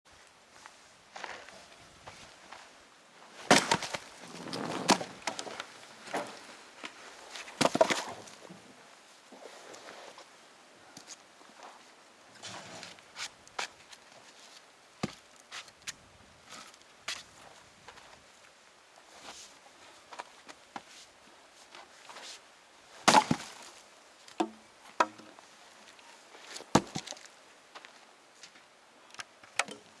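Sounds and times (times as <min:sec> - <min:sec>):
axe chopping firewood: 0:03.5 - 0:05.4, 0:23.1 - 0:23.7, 0:24.4 - 0:25.3, 0:26.8 - 0:27.2.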